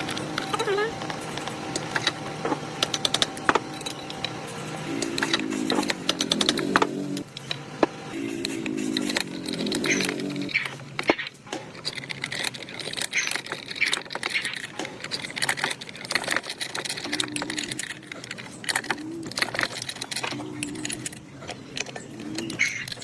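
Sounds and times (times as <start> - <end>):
low coo-like tones: 0.0 - 12.0, 16.8 - 23.0.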